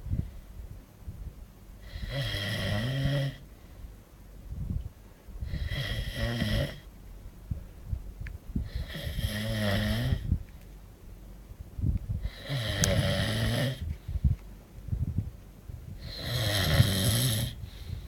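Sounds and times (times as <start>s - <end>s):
man snoring: 1.8s - 3.4s, 5.4s - 6.9s, 8.6s - 10.3s, 12.2s - 13.9s, 16.0s - 17.7s.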